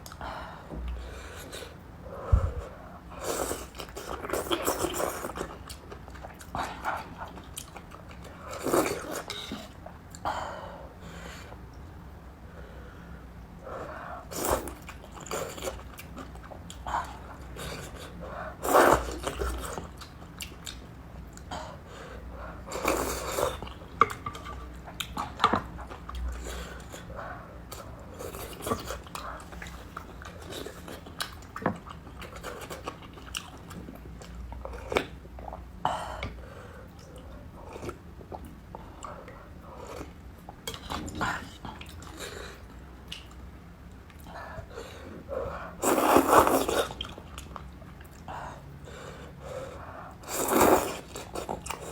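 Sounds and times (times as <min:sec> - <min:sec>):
close chewing with wet mouth clicks: 0:27.7 - 0:35.2, 0:43.0 - 0:44.3
slurping noodles: 0:45.8 - 0:47.1, 0:50.2 - 0:51.9.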